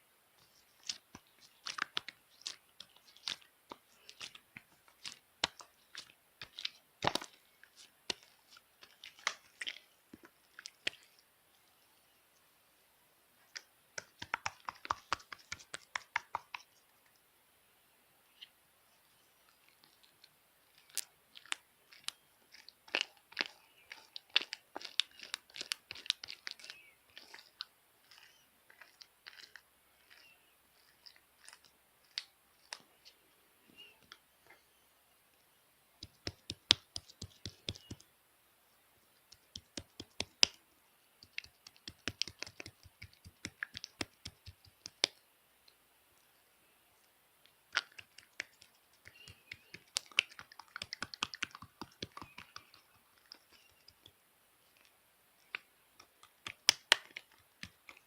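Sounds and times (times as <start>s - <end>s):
slime clicking and popping: 13.6s - 16.6s, 20.8s - 30.2s, 36.0s - 38.0s, 41.2s - 45.2s, 47.7s - 54.1s, 55.4s - 58.0s.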